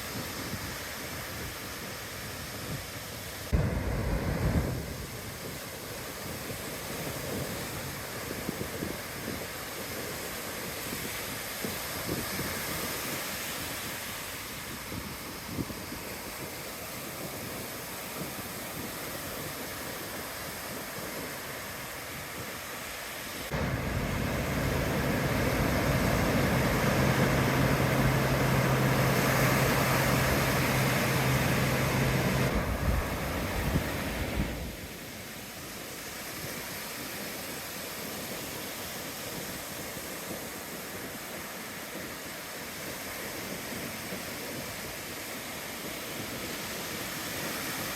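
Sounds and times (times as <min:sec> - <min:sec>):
ocean surf washing on beach: 0:00.0 - 0:47.9
wind on microphone: 0:00.0 - 0:47.9
steady low hum: 0:23.5 - 0:34.7.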